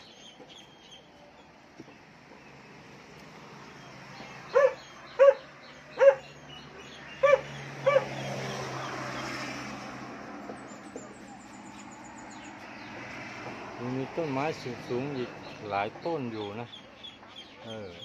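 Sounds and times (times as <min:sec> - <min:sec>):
dog barking: 0:04.5 - 0:06.3, 0:07.2 - 0:08.2.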